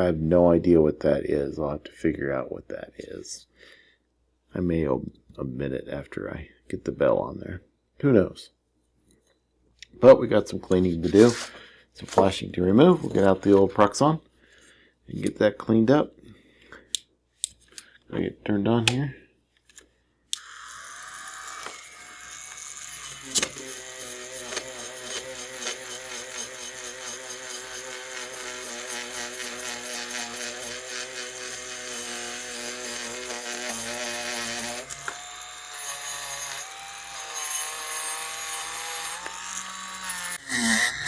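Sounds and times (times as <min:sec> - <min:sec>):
rotary tool whine: 0:20.4 - 0:41.0.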